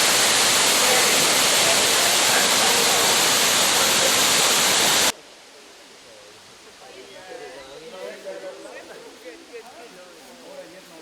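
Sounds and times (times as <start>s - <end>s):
rushing water: 0.0s - 7.3s.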